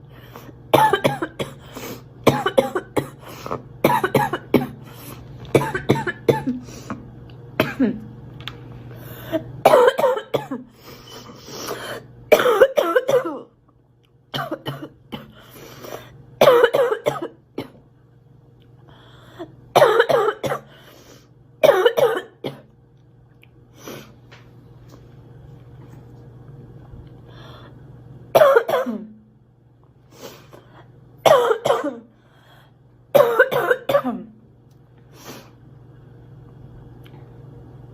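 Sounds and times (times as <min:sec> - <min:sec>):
girl coughing: 0:00.7 - 0:04.9, 0:05.5 - 0:06.7, 0:07.6 - 0:08.0, 0:09.4 - 0:10.7, 0:11.7 - 0:13.6, 0:14.4 - 0:15.4, 0:16.4 - 0:17.8, 0:19.7 - 0:20.7, 0:21.6 - 0:22.7, 0:28.4 - 0:29.2, 0:31.2 - 0:32.1, 0:33.1 - 0:34.3.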